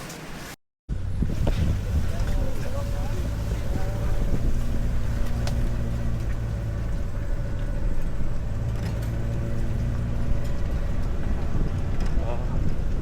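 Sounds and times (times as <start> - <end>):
vehicle engine running: 0.9 - 13.0.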